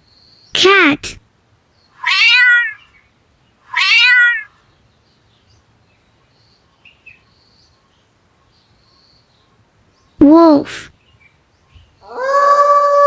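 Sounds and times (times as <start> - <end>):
cat meowing: 2.0 - 2.8, 3.7 - 4.5.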